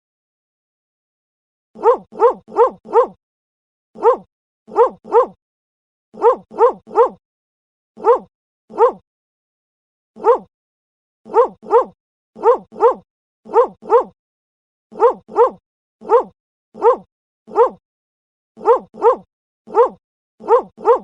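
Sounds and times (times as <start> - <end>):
dog barking: 1.8 - 3.2, 4.0 - 5.4, 6.2 - 7.2, 8.0 - 9.0, 10.2 - 10.5, 11.3 - 14.2, 14.9 - 17.8, 18.6 - 21.0.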